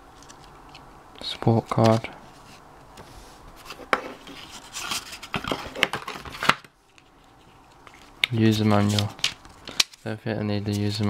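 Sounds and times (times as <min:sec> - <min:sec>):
cardboard box and paper rustling: 0:03.6 - 0:06.6.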